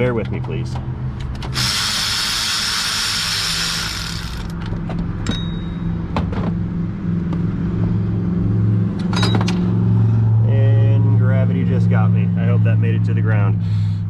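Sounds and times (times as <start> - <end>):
electric ratchet whirring: 1.5 - 4.7
sharp metal clinks: 5.2 - 6.0.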